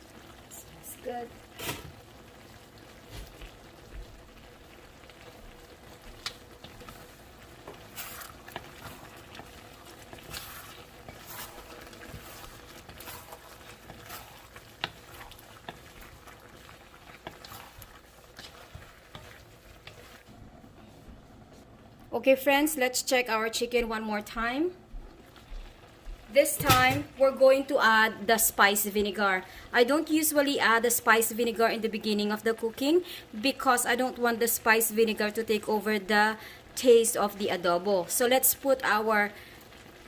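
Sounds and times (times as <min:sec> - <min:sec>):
chicken sizzling in a pan: 0:00.0 - 0:20.3
pops and clicks: 0:06.1 - 0:06.9.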